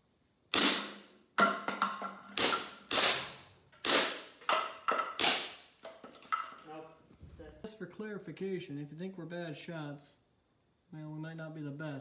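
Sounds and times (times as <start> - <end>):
airsoft gun shots: 0.5 - 1.1, 2.3 - 5.7.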